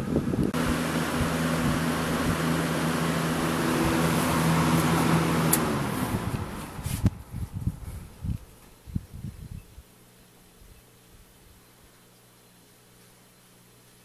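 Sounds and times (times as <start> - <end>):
box fan air rushing: 0.0 - 9.5
low motor hum: 0.0 - 11.6.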